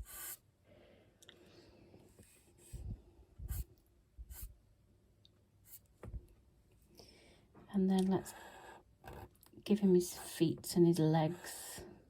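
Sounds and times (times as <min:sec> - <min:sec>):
pen strokes on paper: 0:00.0 - 0:00.4, 0:03.5 - 0:03.7, 0:04.3 - 0:04.6, 0:05.6 - 0:05.8.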